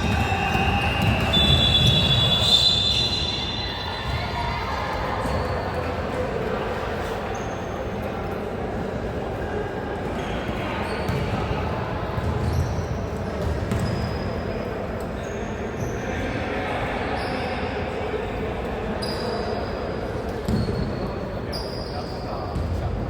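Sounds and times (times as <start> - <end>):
basketball bouncing on court: 0.0 - 2.7, 11.0 - 14.2
shoe squeaks: 0.0 - 4.4, 7.0 - 7.8, 12.4 - 14.6, 20.5 - 22.5.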